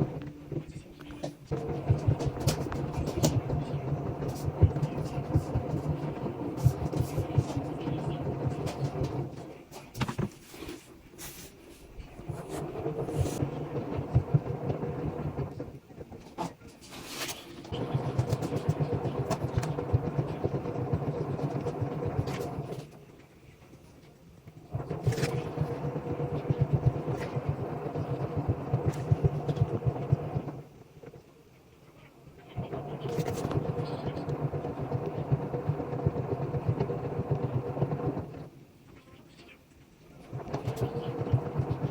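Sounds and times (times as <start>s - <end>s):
washing machine drum humming: 0.0s - 10.3s, 11.9s - 22.9s, 24.6s - 31.1s, 32.4s - 38.5s, 40.1s - 41.9s
washing machine drum rumbling: 17.7s - 22.7s.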